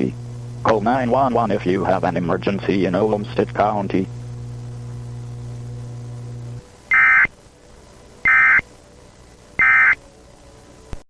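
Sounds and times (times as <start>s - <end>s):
low steady hum: 0.0s - 11.0s
warbling data tone bursts: 6.9s - 7.3s, 8.2s - 8.6s, 9.6s - 10.0s.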